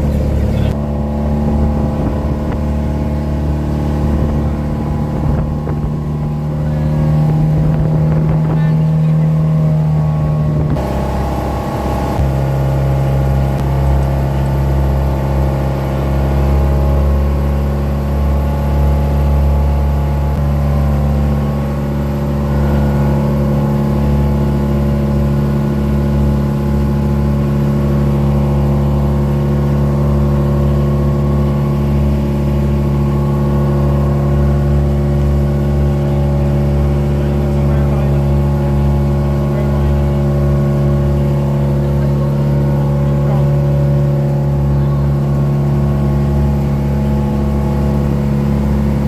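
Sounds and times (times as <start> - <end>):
boat engine humming: 0.0 - 49.0.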